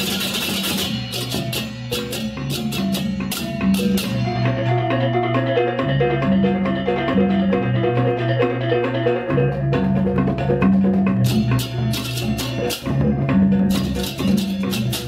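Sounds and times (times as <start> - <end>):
sharp percussive hits: 0.0 - 4.7, 9.2 - 15.0
mallet melody over bass line: 0.0 - 15.0.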